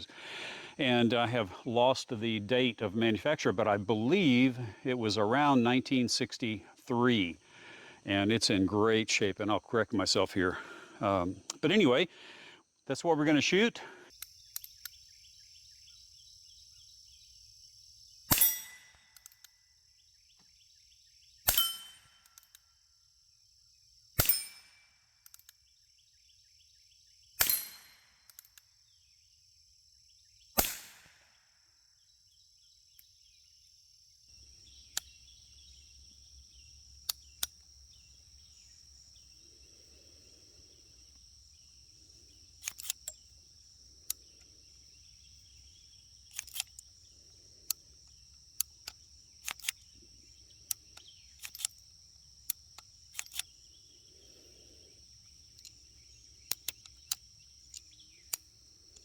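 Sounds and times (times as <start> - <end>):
high insect buzz: 14.0 - 59.0.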